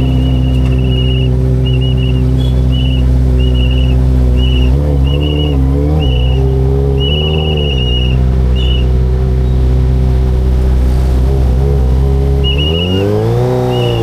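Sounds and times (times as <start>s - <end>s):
shrill whistle toots: 0.0s - 9.6s, 12.4s - 14.0s
throttle blips: 0.0s - 9.9s, 11.9s - 14.0s
motorcycle engine idling: 0.0s - 12.9s.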